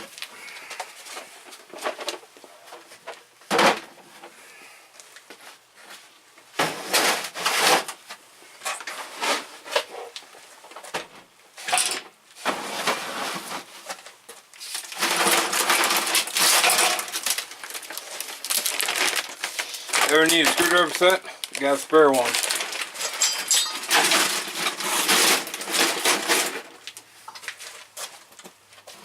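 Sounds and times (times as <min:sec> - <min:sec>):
tools clattering and rustling: 0:10.6 - 0:21.6, 0:22.2 - 0:28.0.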